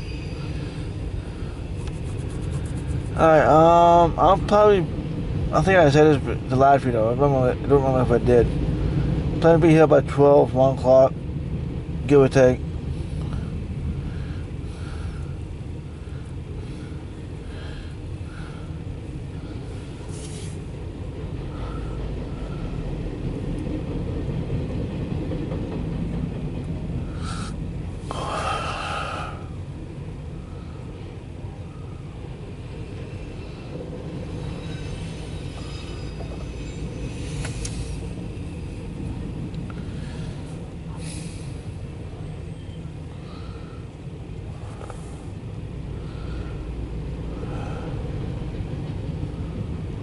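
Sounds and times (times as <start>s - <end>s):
wheels squealing: 0.0s - 3.2s, 31.6s - 43.9s
freight train rumbling past: 0.0s - 50.0s.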